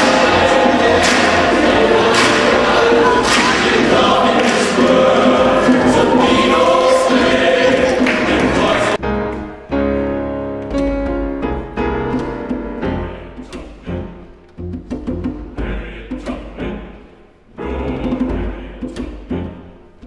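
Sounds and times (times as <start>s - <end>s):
choir singing: 0.0s - 9.0s, 15.6s - 19.6s
instrumental music with drum strikes: 0.0s - 9.6s, 10.6s - 17.0s, 17.6s - 19.6s.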